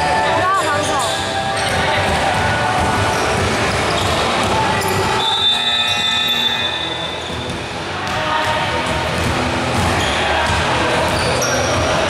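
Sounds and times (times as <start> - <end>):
indoor court din: 0.0 - 12.0
basketball bouncing: 1.6 - 5.3, 7.2 - 12.0
high squeal: 4.8 - 7.5.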